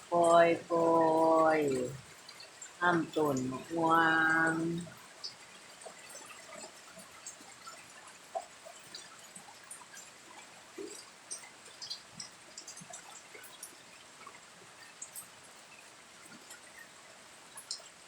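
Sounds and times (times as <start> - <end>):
drops dripping and ticking: 0.0 - 18.0
rain falling: 0.0 - 18.0.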